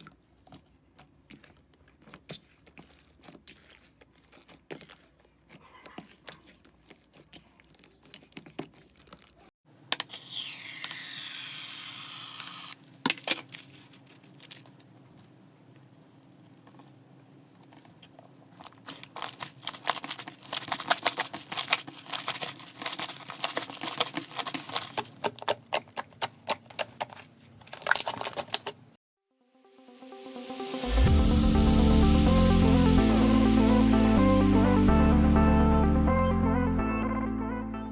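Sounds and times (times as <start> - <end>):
slime crackling and clicking: 18.0 - 28.8.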